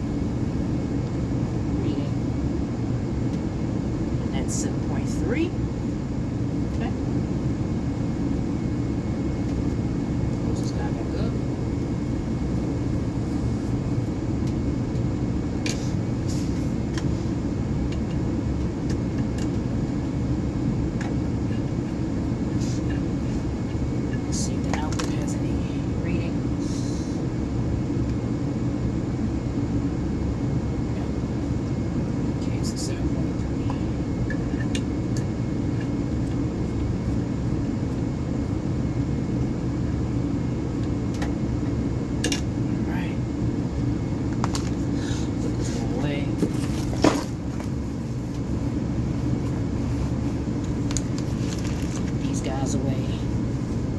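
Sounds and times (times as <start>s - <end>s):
gas furnace rumbling: 0.0s - 53.9s.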